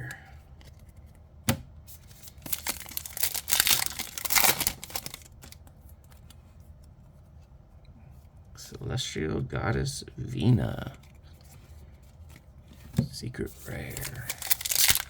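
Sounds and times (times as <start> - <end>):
plastic packaging crinkling: 2.0 - 5.6, 13.9 - 15.0.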